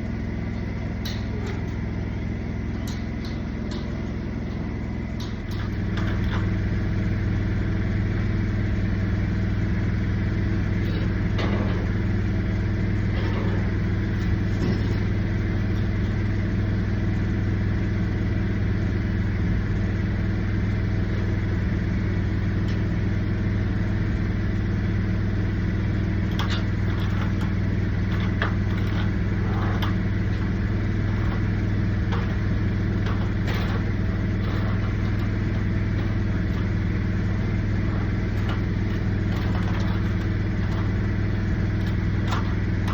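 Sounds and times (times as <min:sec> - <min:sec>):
small engine running: 0:19.6 - 0:42.9.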